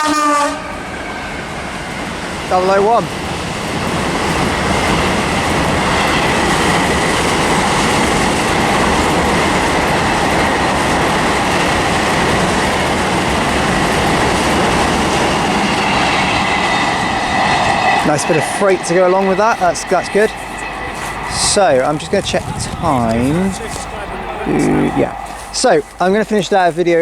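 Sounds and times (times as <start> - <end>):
train wagons rolling on rails: 0.0 - 27.0.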